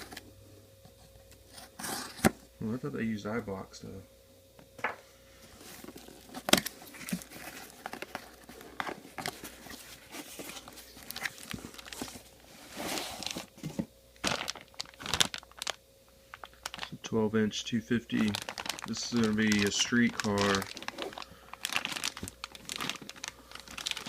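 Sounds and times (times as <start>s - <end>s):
packing material crinkling: 5.5s - 17.1s, 17.9s - 24.0s.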